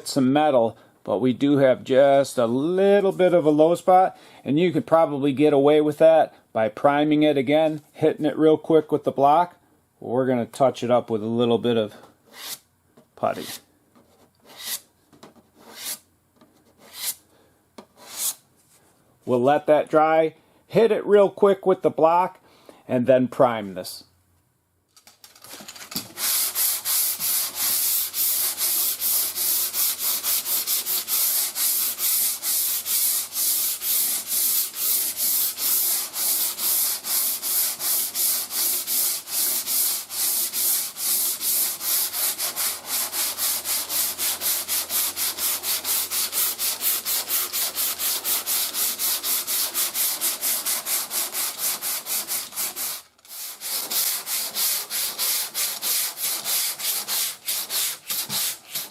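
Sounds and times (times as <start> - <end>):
sandpaper rubbing back and forth: 12.3 - 12.6, 14.4 - 14.9, 15.6 - 16.1, 16.7 - 17.2, 18.0 - 18.4, 26.1 - 58.9.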